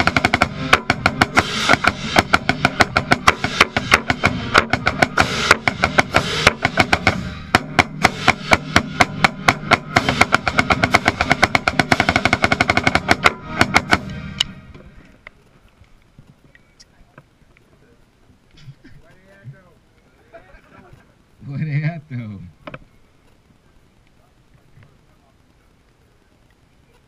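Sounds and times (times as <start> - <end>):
snare drum rapid strokes: 0.0 - 14.5
marching band playing: 0.0 - 14.8.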